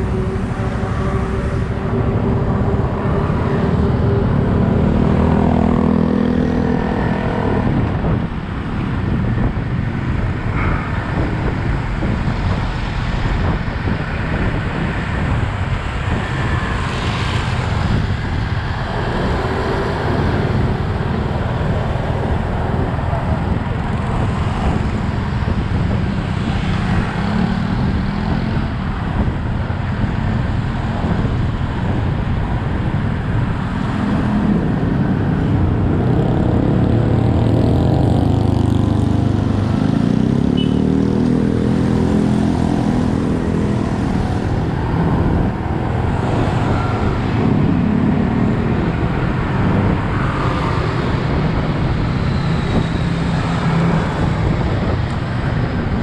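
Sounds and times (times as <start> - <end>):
road and traffic noise: 0.0 - 56.0.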